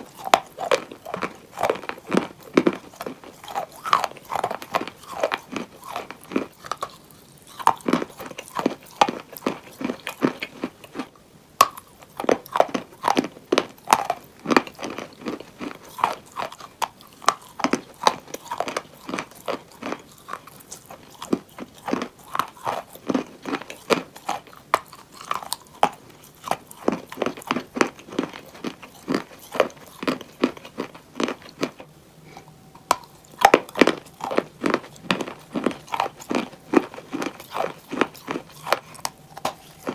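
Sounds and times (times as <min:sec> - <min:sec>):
chewing crunchy chalk: 0:00.0 - 0:39.9.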